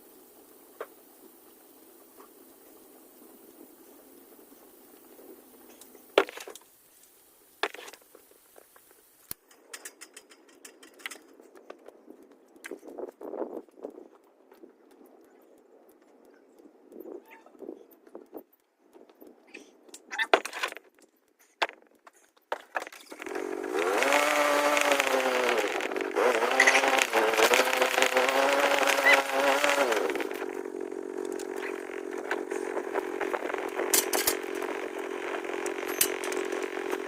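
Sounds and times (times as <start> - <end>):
engine revving: 23.1 - 37.0.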